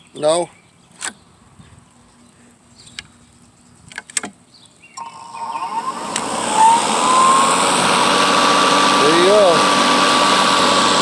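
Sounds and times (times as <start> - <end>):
lawn mower motor whine: 5.0 - 11.0.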